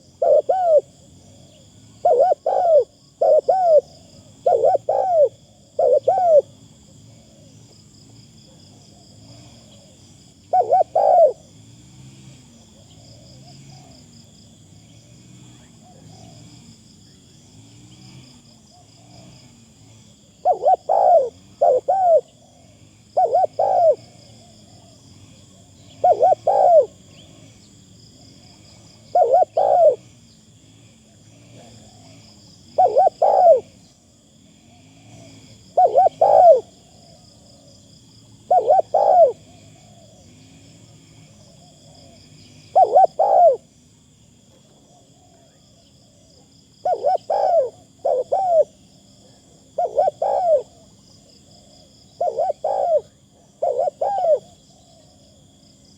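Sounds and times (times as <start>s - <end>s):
dove cooing: 0.0s - 7.6s, 8.5s - 11.5s, 12.4s - 14.1s, 15.5s - 16.5s, 20.4s - 27.4s, 28.4s - 30.0s, 31.0s - 33.8s, 34.7s - 37.8s, 38.4s - 40.3s, 41.3s - 43.7s, 44.5s - 55.4s.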